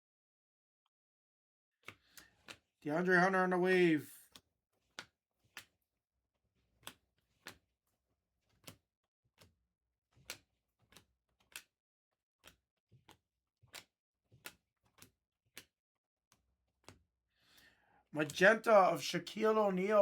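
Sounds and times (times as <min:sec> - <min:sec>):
trading cards clicking while flipped: 0:01.8 - 0:02.7, 0:06.8 - 0:07.6, 0:10.2 - 0:11.7, 0:12.4 - 0:15.8.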